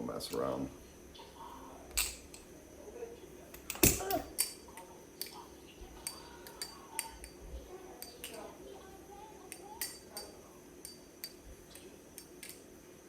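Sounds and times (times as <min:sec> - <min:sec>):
butterfly knife metal clicks: 0:09.5 - 0:12.6.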